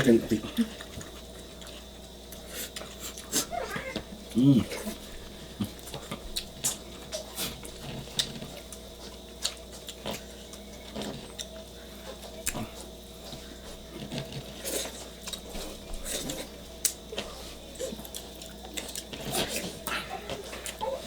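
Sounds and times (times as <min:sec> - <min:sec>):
chewing and sucking: 0:05.6 - 0:21.0.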